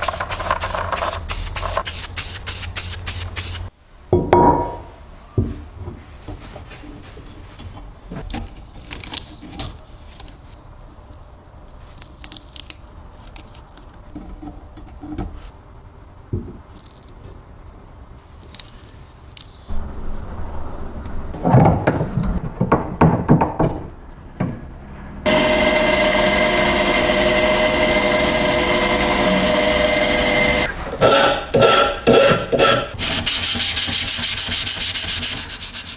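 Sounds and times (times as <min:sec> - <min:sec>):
low hum: 0:19.7 - 0:22.4.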